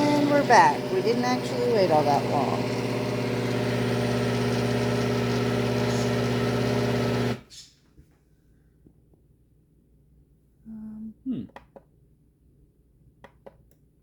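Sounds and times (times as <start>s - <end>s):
blender motor labouring: 0.0s - 7.5s.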